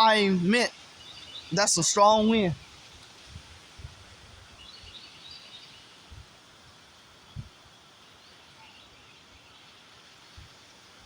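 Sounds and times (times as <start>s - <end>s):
storm wind hissing: 0.0s - 4.9s
wind buffeting microphone: 1.5s - 5.0s, 7.3s - 7.6s
faint bird chirps: 7.3s - 10.5s.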